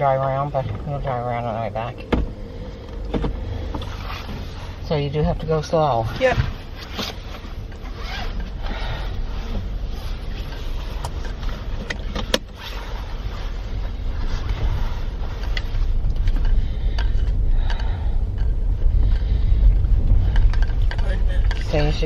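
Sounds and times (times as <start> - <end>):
vehicle low rumble: 0.0 - 22.0.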